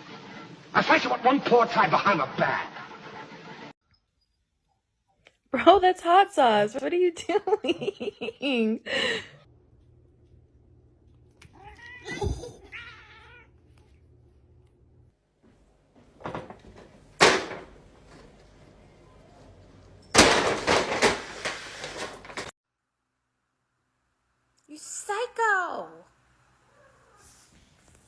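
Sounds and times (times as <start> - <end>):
cat meowing: 11.5 - 13.6.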